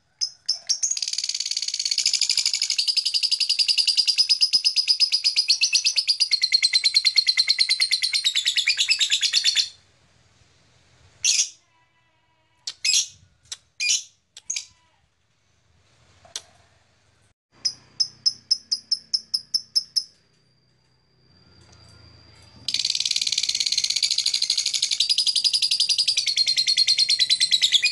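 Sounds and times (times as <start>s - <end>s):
lovebird chattering trill: 0.2s - 9.7s, 17.6s - 20.1s, 22.7s - 27.9s
sharp bird chirps: 0.2s - 9.8s, 17.6s - 20.3s, 21.0s - 27.9s.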